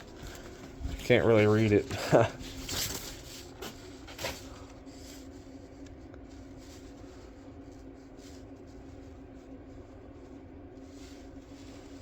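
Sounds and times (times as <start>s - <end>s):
steady background hum: 0.0s - 12.0s
paper sheets rustling: 1.1s - 5.5s.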